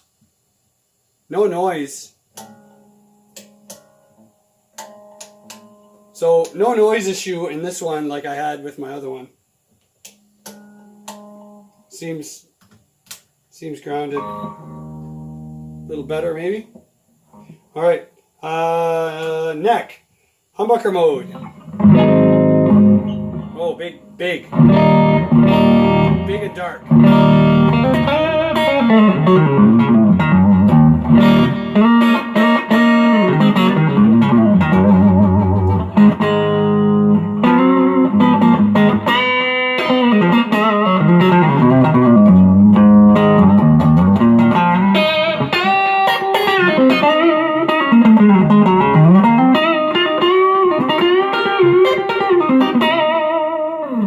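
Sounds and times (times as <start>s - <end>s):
electric guitar lead lines: 2.3s - 7.3s, 10.1s - 12.2s, 13.8s - 16.7s, 20.8s - 54.0s.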